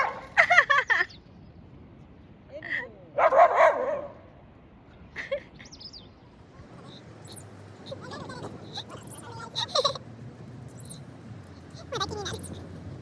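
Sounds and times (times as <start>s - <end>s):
dog barking: 0.0s - 0.4s, 3.2s - 4.3s.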